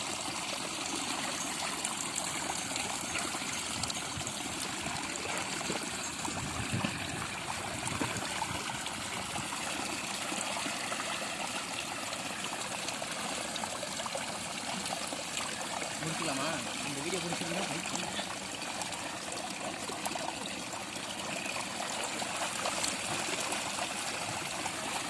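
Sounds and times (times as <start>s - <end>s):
stream trickling: 0.0s - 25.0s.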